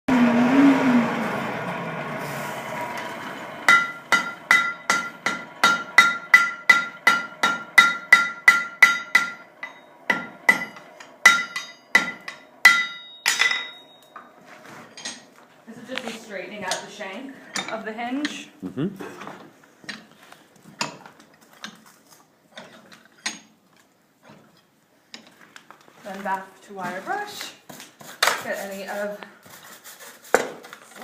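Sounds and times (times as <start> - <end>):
hammer striking iron on anvil: 3.7 - 14.1.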